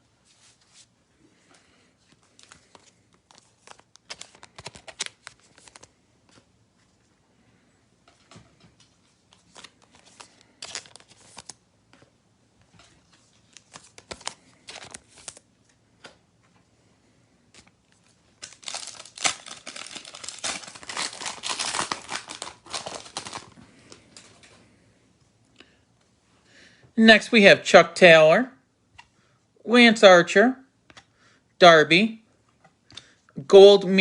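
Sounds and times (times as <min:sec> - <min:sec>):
foil wrapper crinkling and tearing: 0:02.4 - 0:05.9, 0:09.4 - 0:11.6, 0:13.4 - 0:15.5, 0:17.6 - 0:23.6.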